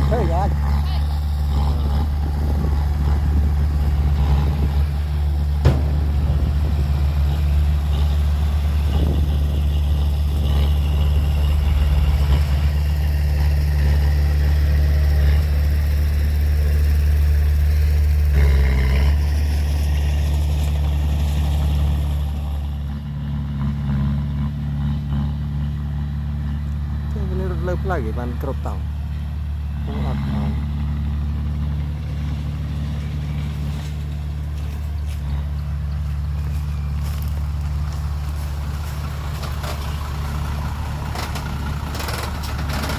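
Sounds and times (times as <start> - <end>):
heavy diesel engine running: 0.0 - 42.9
sharp knock: 5.6 - 6.6.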